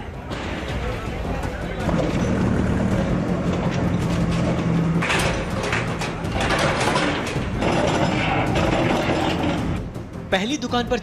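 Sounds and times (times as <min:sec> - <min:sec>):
machinery engine hum: 0:00.5 - 0:10.2
masonry scraping and clattering: 0:01.9 - 0:09.8.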